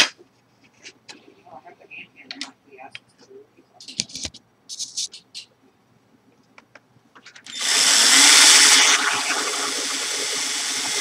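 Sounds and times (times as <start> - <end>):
angle grinder running: 7.5 - 11.0.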